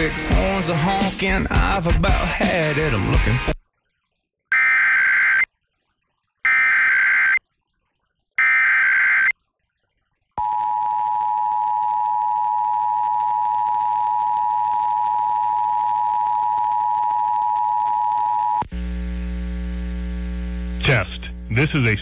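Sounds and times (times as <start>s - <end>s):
low mains hum: 10.4s - 22.0s.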